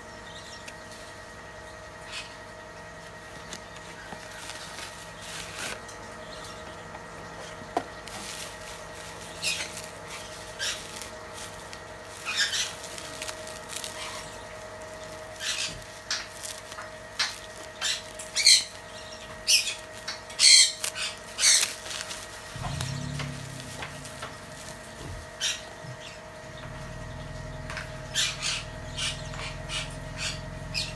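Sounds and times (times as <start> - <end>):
faint steady hum: 0.0 - 30.9
plastic packaging crinkling: 3.4 - 6.0, 7.7 - 25.8.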